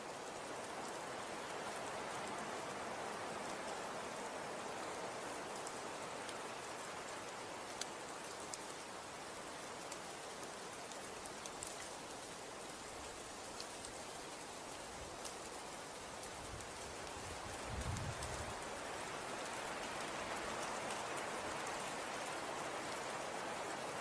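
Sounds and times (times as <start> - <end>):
soft hiss of falling snow: 0.0 - 24.0
light ticks of snowflakes landing: 9.8 - 12.3, 15.0 - 23.1.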